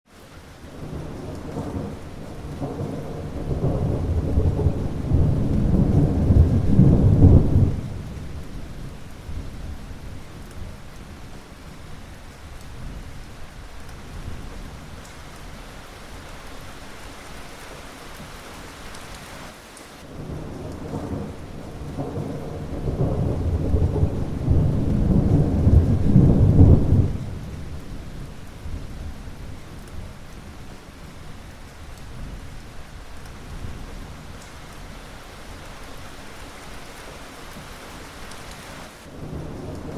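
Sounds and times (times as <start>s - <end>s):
steady rain: 0.1s - 39.9s
rolling thunder: 0.7s - 12.1s, 20.0s - 34.7s, 39.0s - 39.9s.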